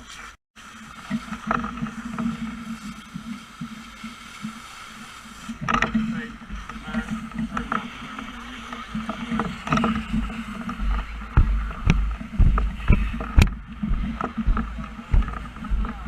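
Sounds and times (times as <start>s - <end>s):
low steady rumble: 8.9s - 16.0s
sharp knocks and clicks: 9.0s - 16.0s.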